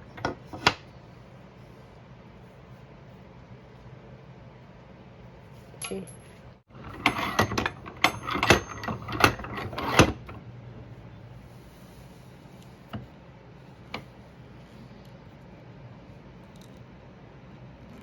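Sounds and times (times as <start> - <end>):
tools clicking and knocking: 5.8 - 10.4.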